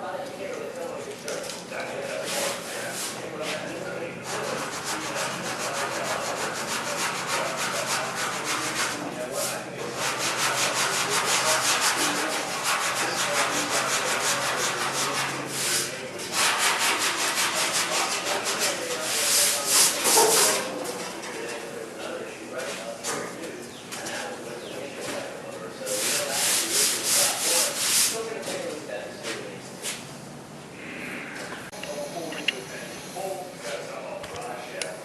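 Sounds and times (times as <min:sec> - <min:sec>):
sandpaper scratching on metal: 0:04.2 - 0:20.7, 0:25.9 - 0:28.2.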